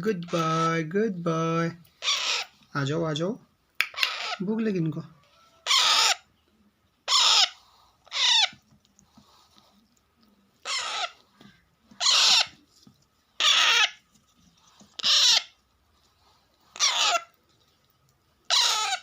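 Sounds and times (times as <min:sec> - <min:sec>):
parakeet chicks begging calls: 0:02.0 - 0:02.5, 0:03.9 - 0:04.5, 0:05.6 - 0:06.3, 0:07.0 - 0:08.6, 0:10.6 - 0:11.3, 0:12.0 - 0:12.6, 0:13.4 - 0:14.0, 0:15.0 - 0:15.6, 0:16.7 - 0:17.3, 0:18.5 - 0:19.0.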